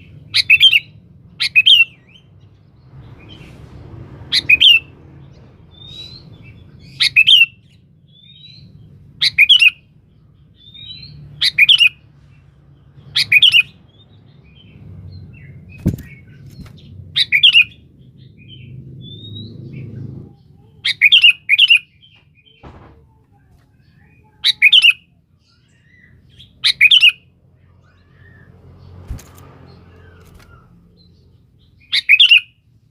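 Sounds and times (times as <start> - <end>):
bird singing sharp phrases: 0.0 - 3.6, 4.3 - 32.8
soft bird chirps: 4.4 - 32.6
thump: 22.6 - 23.2.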